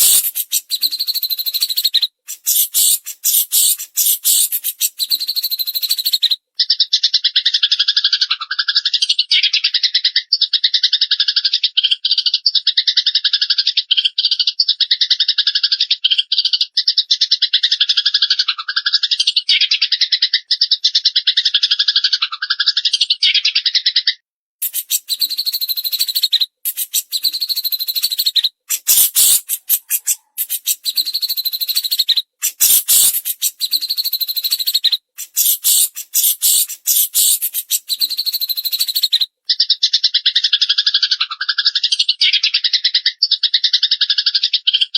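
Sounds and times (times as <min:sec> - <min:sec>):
harsh hissy sparrow chatter: 0:00.0 - 0:06.3, 0:24.6 - 0:39.2
rapid high-pitched bird trilling: 0:00.0 - 0:08.1, 0:18.7 - 0:44.9.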